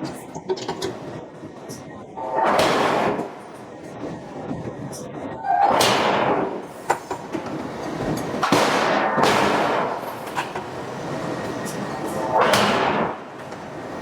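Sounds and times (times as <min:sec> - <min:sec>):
forging hammer striking steel: 0:05.7 - 0:07.2, 0:08.4 - 0:10.7, 0:12.1 - 0:13.4.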